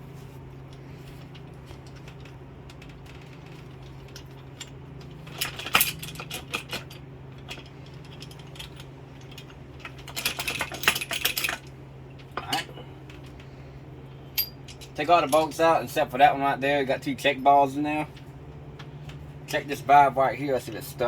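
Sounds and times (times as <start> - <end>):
steady low hum: 0.0 - 21.0
small metal parts clinking: 0.7 - 13.5, 14.1 - 15.6.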